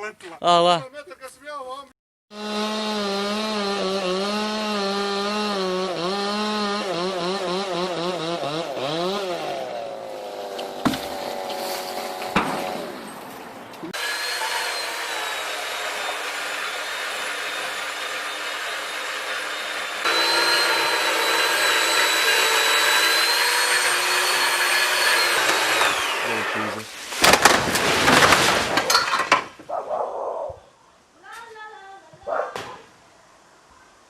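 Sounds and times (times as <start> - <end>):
chainsaw running: 2.3 - 13.0, 13.9 - 26.8
cracking and crashing: 26.7 - 29.6.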